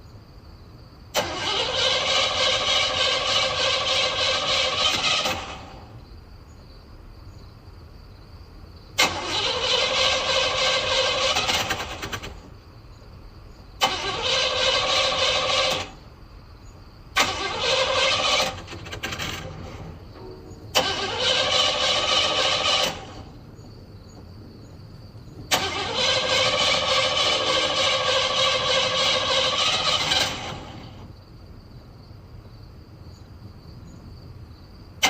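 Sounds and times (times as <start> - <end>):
car engine starter cranking: 1.1 - 6.0, 9.0 - 12.5, 13.8 - 16.1, 17.1 - 23.5, 25.5 - 31.1.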